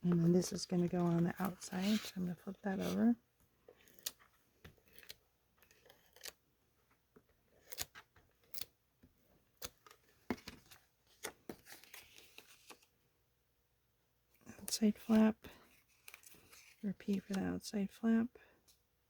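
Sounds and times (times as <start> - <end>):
paper rustling: 0.0 - 3.0, 9.6 - 12.9, 15.0 - 17.4.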